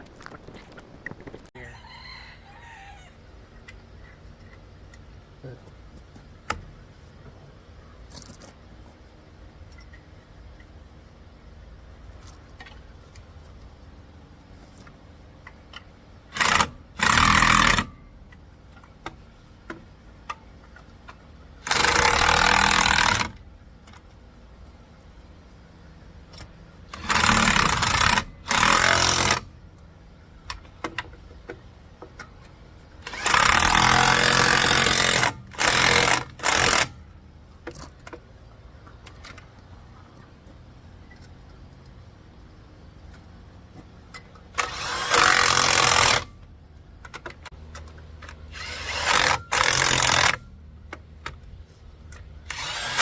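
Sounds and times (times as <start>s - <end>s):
impact wrench bursts: 16.3s - 18.0s, 21.6s - 23.4s, 26.9s - 29.5s, 33.0s - 37.0s, 44.5s - 46.4s, 48.2s - 50.5s, 52.4s - 53.0s.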